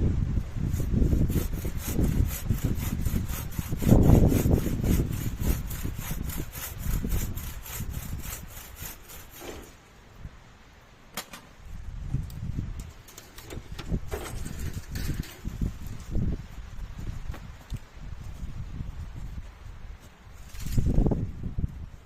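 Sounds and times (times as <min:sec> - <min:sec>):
wind rumble on microphone: 0:00.0 - 0:09.3, 0:11.6 - 0:22.0
hand saw cutting wood: 0:00.6 - 0:09.8.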